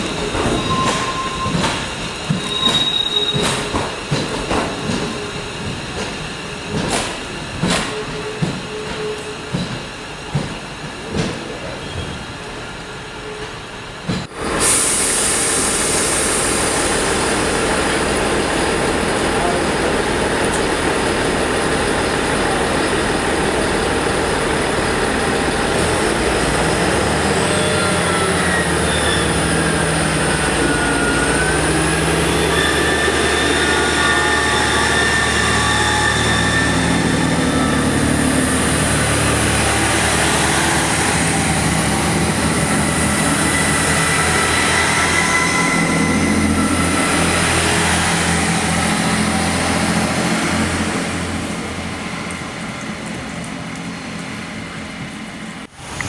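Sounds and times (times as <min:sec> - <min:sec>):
high wheel squeal: 0:00.0 - 0:04.1, 0:21.6 - 0:52.4
train running on rails: 0:00.0 - 0:56.0.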